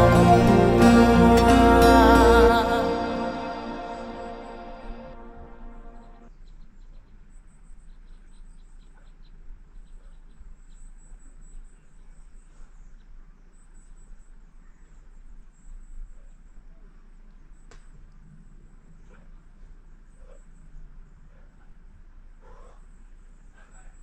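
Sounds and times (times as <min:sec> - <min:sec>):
short high pips: 0:00.0 - 0:06.3.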